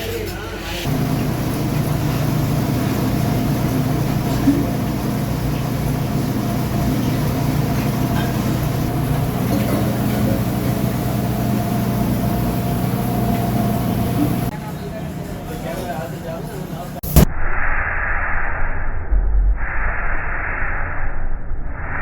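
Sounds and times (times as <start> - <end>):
workshop machine motor humming: 0.8 - 14.7.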